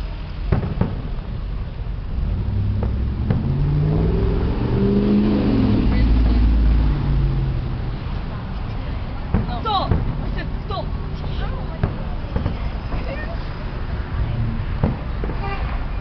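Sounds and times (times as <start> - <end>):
sharp pops: 0.5 - 1.2, 2.7 - 3.7, 11.2 - 12.8, 14.7 - 15.5
low rumble: 1.0 - 8.4
car driving by: 2.1 - 16.0.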